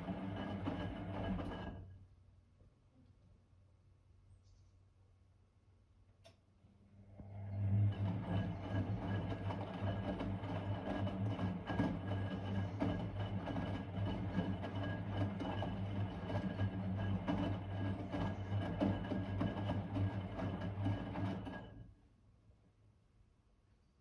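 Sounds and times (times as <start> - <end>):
washing machine motor humming: 0.0 - 1.6, 7.5 - 21.7.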